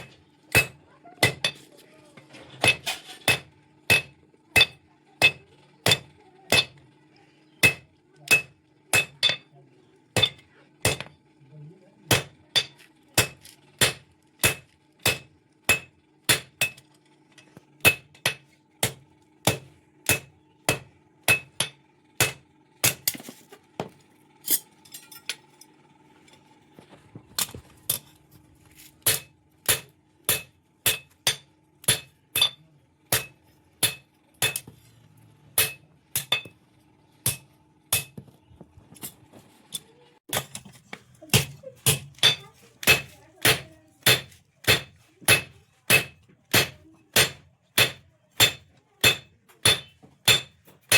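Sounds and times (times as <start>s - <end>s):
hammer striking metal on anvil: 0.0s - 1.7s, 2.6s - 6.8s, 7.6s - 9.5s, 10.2s - 11.2s, 12.1s - 16.9s, 17.8s - 23.2s, 29.0s - 34.8s, 35.6s - 36.6s, 37.2s - 38.3s, 39.0s - 50.9s.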